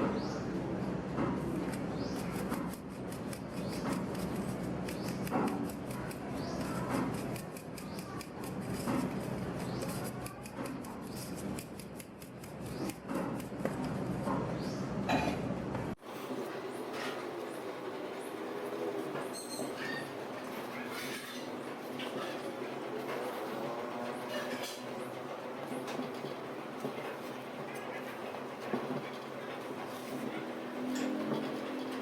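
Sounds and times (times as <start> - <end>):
utensil scraping in bowl: 18.4 - 32.0.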